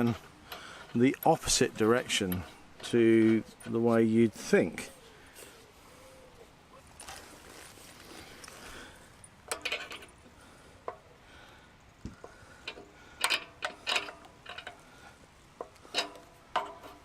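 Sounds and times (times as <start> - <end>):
metal parts clinking and rattling: 9.2 - 10.2, 12.6 - 14.9, 15.6 - 17.0.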